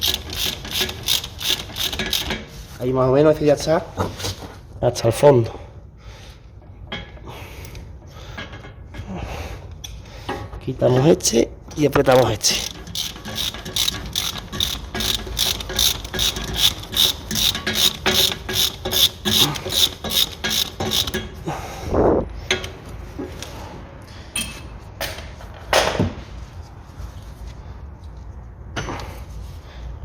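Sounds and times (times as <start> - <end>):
hand ratchet clicking: 0.0 - 2.4, 11.9 - 21.3.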